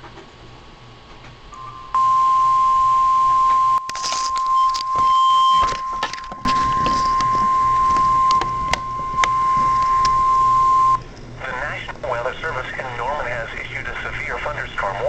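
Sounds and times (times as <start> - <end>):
loud high alert beep: 1.6 - 11.0
clicks and rustling: 3.8 - 10.2.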